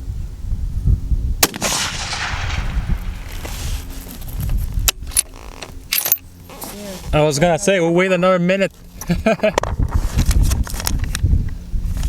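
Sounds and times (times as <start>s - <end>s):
wind rumbling on microphone: 0.0s - 6.4s, 8.9s - 12.0s
rifle shot echoing: 1.4s - 4.5s.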